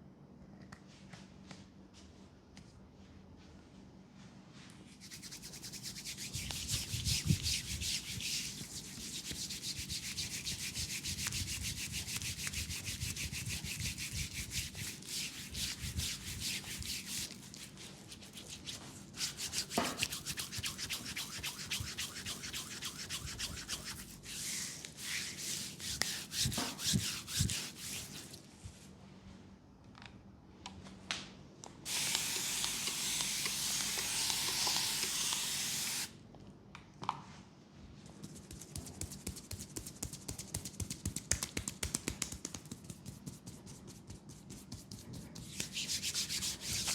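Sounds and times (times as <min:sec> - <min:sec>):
hands rubbing skin: 0:04.8 - 0:28.4, 0:38.1 - 0:46.9
steady hiss: 0:31.9 - 0:36.1.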